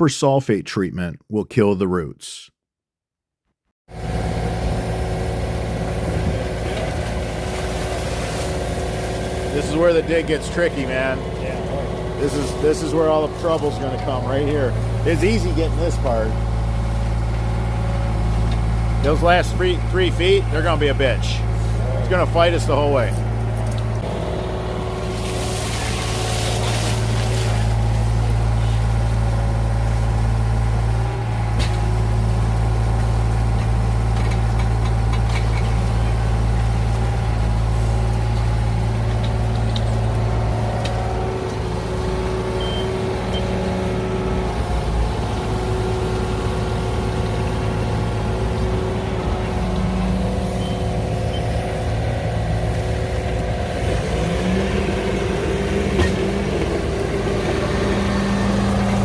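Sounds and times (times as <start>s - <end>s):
excavator diesel engine running: 4.0s - 59.0s.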